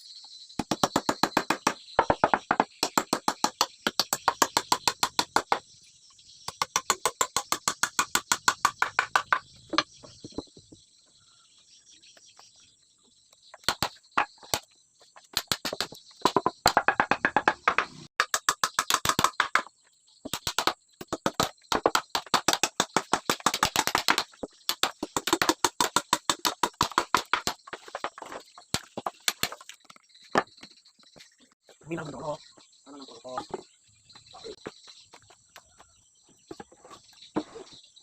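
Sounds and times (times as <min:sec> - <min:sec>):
insects chirring: 0:00.0 - 0:38.0
hammer knocking on wood: 0:00.6 - 0:05.6, 0:15.4 - 0:19.7.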